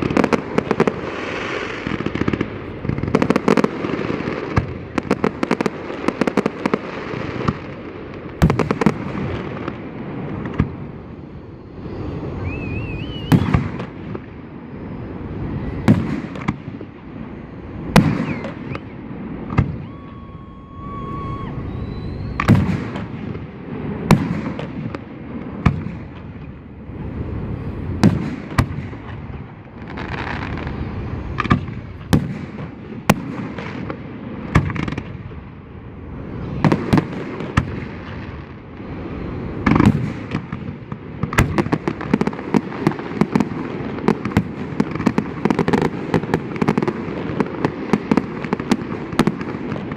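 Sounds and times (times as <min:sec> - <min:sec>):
firework shells booming: 0:00.0 - 0:14.8, 0:15.6 - 0:20.3, 0:21.9 - 0:27.0, 0:27.8 - 0:35.6, 0:36.5 - 0:49.9
faint firework whistling: 0:00.0 - 0:49.9
firework crackling: 0:00.0 - 0:49.9.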